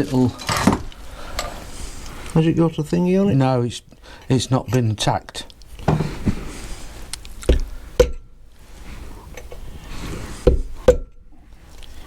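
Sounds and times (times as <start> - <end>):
metal-on-metal knocks with ring: 7.5 - 8.3, 10.5 - 11.2.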